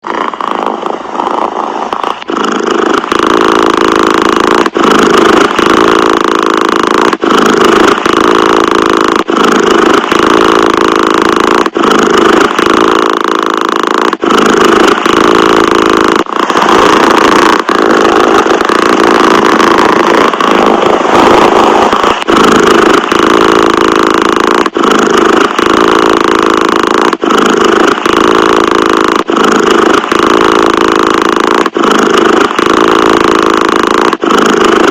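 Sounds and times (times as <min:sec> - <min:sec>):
cat purring: 0:00.0 - 0:34.9.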